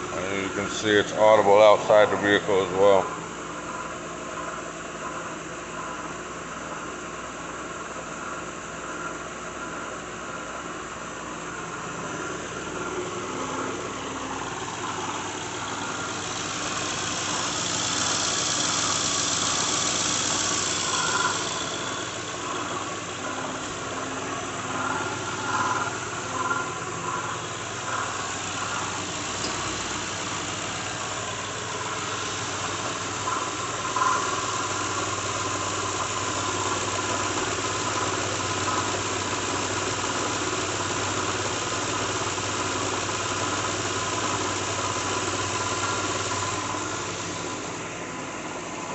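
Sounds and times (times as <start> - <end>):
car engine idling: 0.0 - 48.9
engine whirring: 8.9 - 48.9
irregular rattle: 11.9 - 47.7.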